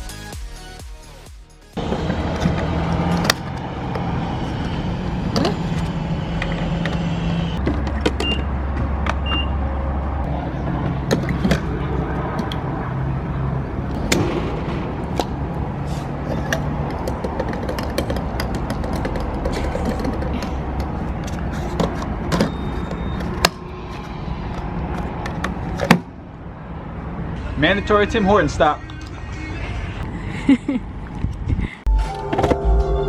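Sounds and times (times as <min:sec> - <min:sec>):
car engine and road hum: 0:01.8 - 0:30.2.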